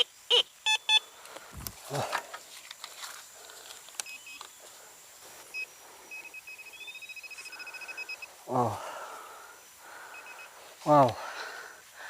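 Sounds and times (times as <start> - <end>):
metal detector beeps: 0.0 - 1.1, 4.0 - 4.6, 5.5 - 8.3, 10.1 - 10.6
handling rustle: 1.4 - 5.6.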